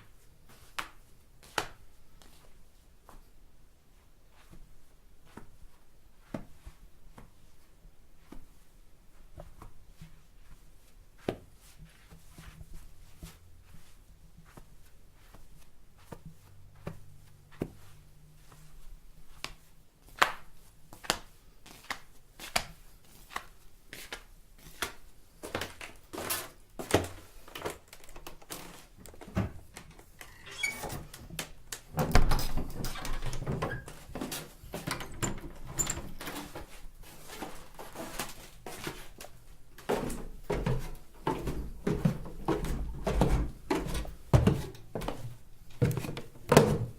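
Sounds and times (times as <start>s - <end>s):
footsteps in slippers: 8.2s - 31.9s, 33.4s - 46.9s.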